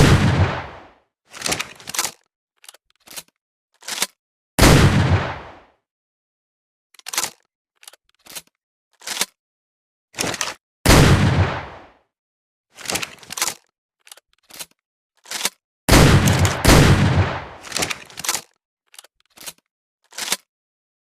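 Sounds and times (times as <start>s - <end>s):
shotgun shots: 0.0s - 0.9s, 4.6s - 5.6s, 10.9s - 11.8s, 15.9s - 18.0s
gun handling clicks: 7.0s - 9.4s, 12.8s - 15.6s, 16.2s - 20.5s.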